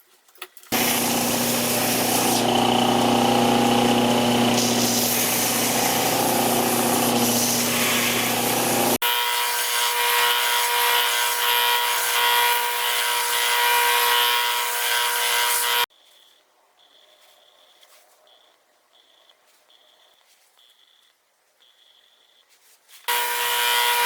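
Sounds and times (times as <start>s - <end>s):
higher-pitched power tool running: 0.7s - 15.9s, 23.1s - 24.0s
lower-pitched power tool running: 0.7s - 15.9s, 23.1s - 24.0s.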